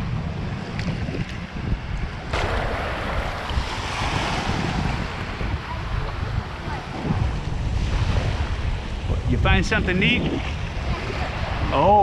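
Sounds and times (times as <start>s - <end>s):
wind buffeting microphone: 0.0s - 12.0s
sea water sloshing and splashing: 2.2s - 8.8s.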